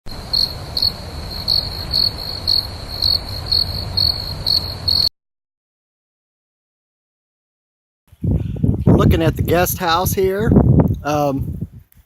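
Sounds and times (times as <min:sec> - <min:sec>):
insects trilling: 0:00.1 - 0:05.1.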